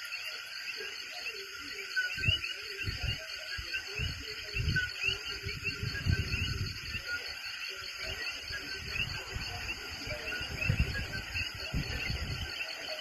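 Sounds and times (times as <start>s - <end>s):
frogs chirping: 0.0s - 13.0s
high insect drone: 0.0s - 13.0s.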